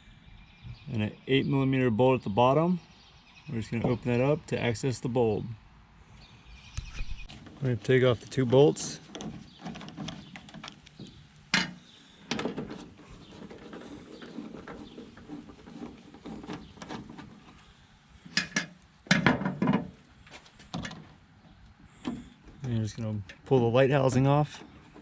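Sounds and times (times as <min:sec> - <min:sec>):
knocks and clatter: 0:18.3 - 0:20.0.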